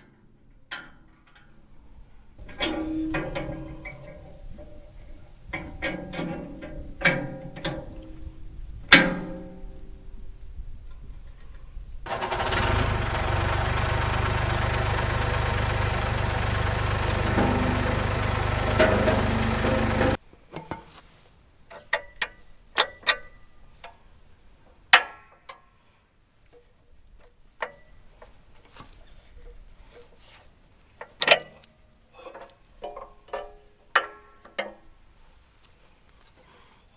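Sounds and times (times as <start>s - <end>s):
tractor engine running: 12.1s - 20.2s.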